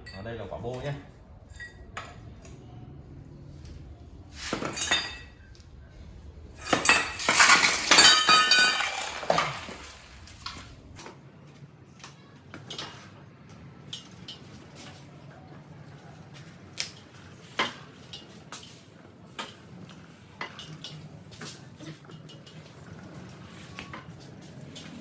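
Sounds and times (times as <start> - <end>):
metal pipes clanking: 4.4 - 11.0.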